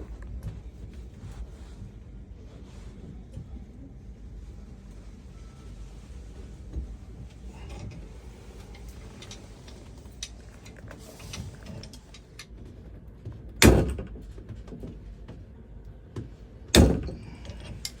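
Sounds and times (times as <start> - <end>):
loud knocks: 16.8 - 17.2.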